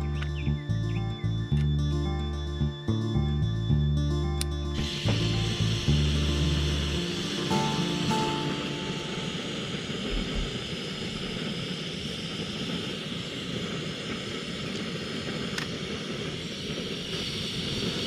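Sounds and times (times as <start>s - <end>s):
stove burner hissing: 4.8s - 18.0s.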